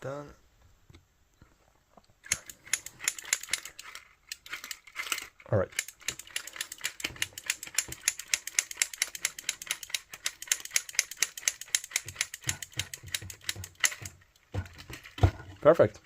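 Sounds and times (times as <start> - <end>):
flip clock flaps clicking: 5.8 - 14.5.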